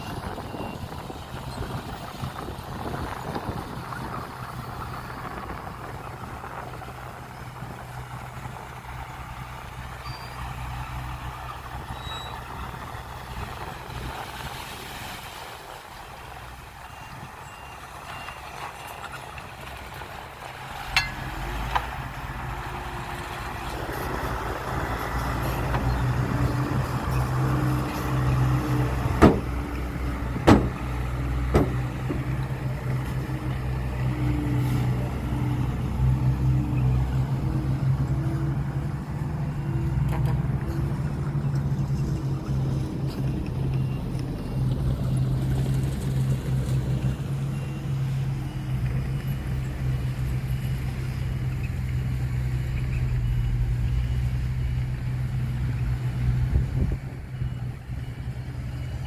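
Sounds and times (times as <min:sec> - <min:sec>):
sharp knocks: 0:30.4 - 0:30.8.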